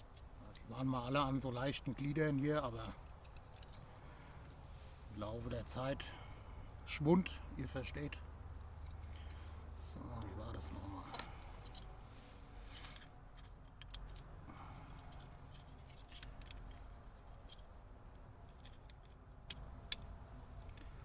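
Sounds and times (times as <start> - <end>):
small metal parts clinking: 2.2 - 4.8, 11.0 - 12.1, 12.7 - 21.0.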